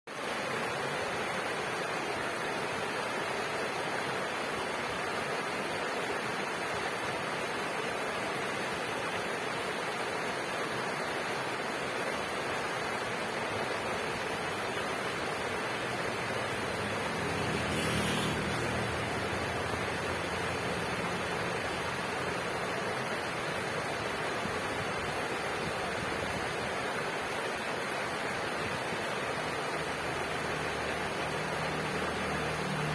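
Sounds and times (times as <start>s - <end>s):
river water rushing: 0.1s - 32.9s.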